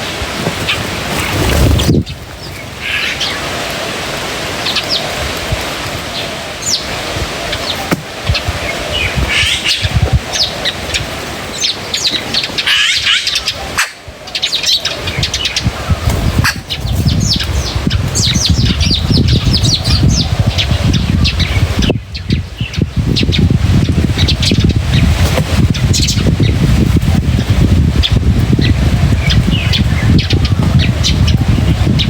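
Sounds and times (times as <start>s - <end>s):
small birds chirping: 6.1s - 26.7s, 27.4s - 32.0s.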